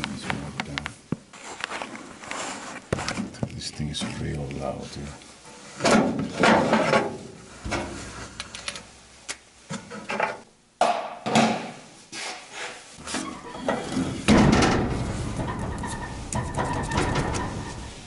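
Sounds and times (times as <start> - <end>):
low steady hum: 13.0 - 18.0.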